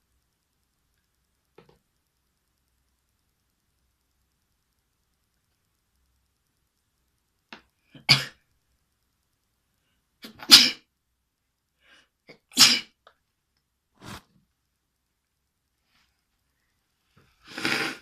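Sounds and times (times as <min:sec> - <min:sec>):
person sneezing: 0:08.0 - 0:08.4, 0:10.2 - 0:10.9, 0:12.3 - 0:13.0.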